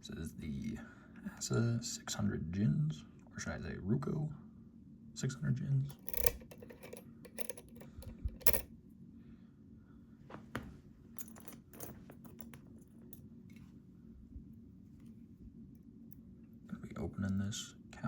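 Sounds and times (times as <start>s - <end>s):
metallic clicks of lock and tools: 5.9s - 8.7s.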